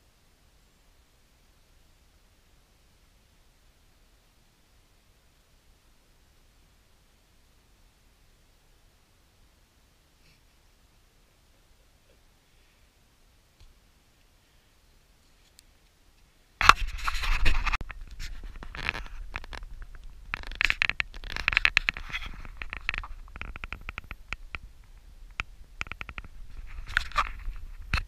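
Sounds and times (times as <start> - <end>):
scratching and scraping noises: 16.6 - 28.0
sharp clicks: 17.8 - 28.0.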